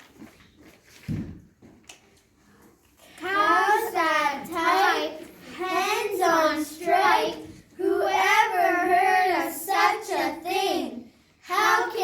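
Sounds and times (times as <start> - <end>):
young children chanting: 3.2 - 12.0.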